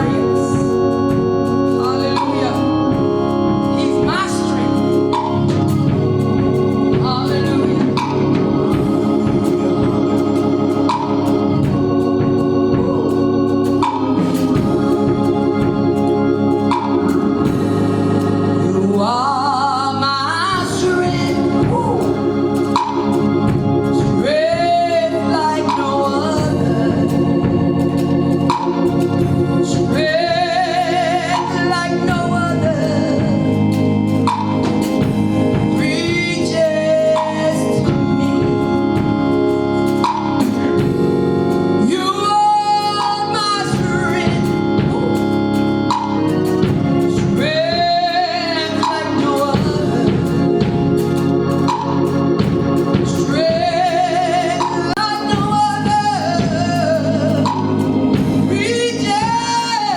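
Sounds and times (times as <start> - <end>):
person singing: 0.0 - 5.9, 6.8 - 15.7, 18.5 - 23.0, 23.9 - 27.6, 29.6 - 34.8, 35.5 - 39.0, 41.8 - 46.4, 47.1 - 50.9, 52.9 - 59.9
organ holding sustained chords: 0.0 - 59.9.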